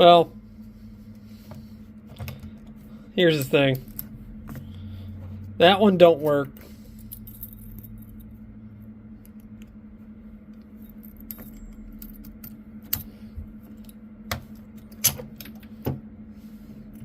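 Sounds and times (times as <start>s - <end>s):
steady low hum: 0.0s - 17.0s
keys jangling: 6.9s - 8.3s, 10.8s - 13.1s.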